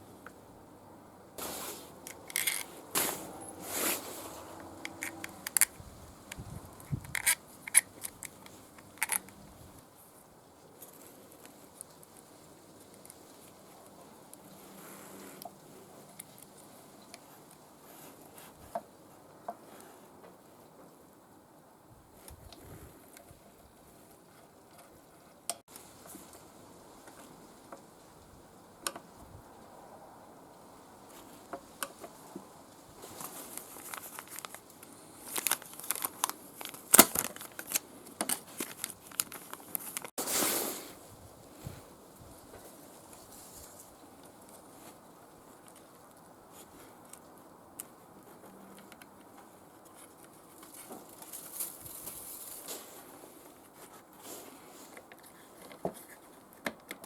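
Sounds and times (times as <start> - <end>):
light rustling of small parts: 1.4 - 21.0, 31.0 - 57.0
small parts and hand tools clicking: 2.0 - 3.6, 4.3 - 9.4, 33.2 - 40.1
small parts and tools clicking: 2.0 - 3.6, 4.5 - 9.4.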